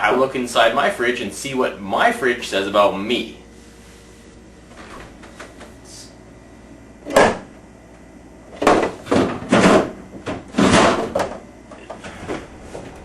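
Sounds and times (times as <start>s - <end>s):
refrigerator drawers sliding and knocking: 8.5s - 11.4s.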